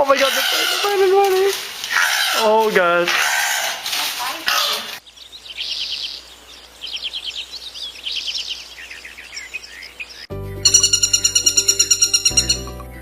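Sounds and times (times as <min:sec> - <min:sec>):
songbird trilling: 0:00.0 - 0:01.2, 0:04.4 - 0:13.0
music with fast pulsing beat: 0:10.6 - 0:12.9.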